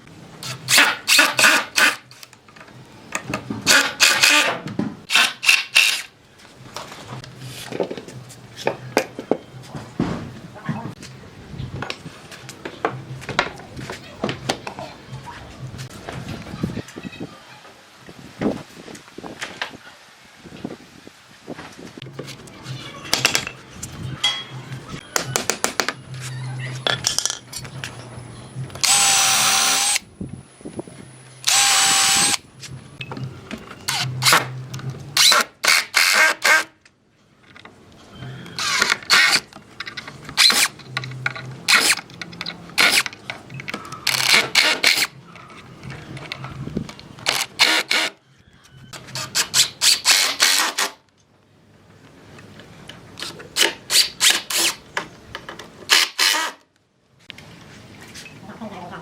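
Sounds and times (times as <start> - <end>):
power tool whining: 28.8 - 30.0, 31.4 - 32.4.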